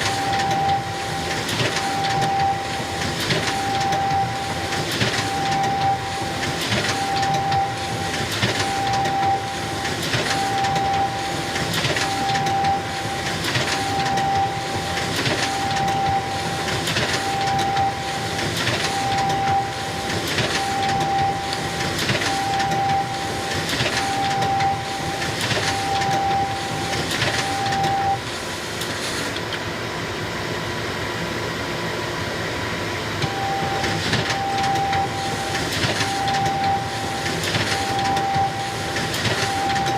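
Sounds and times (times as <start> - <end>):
photocopier whirring: 0.0 - 39.9
short tone: 33.2 - 39.9.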